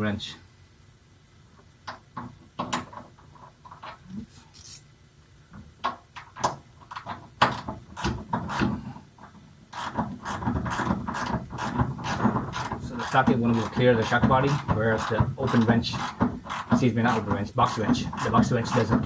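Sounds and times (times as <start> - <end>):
hand tools clicking and clunking: 5.5 - 19.0.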